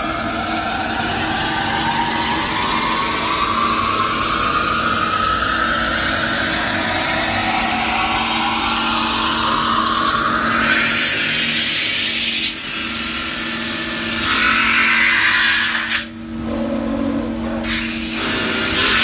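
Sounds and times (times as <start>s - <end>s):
rising whine: 0.0s - 15.2s
lathe humming: 0.0s - 16.0s.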